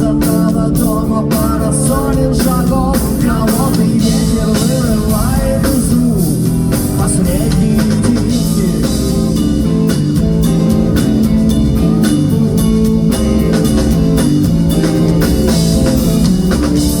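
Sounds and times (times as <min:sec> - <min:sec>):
bass guitar: 0:00.0 - 0:17.0
drum kit hits: 0:00.0 - 0:17.0
electric guitars: 0:00.0 - 0:17.0.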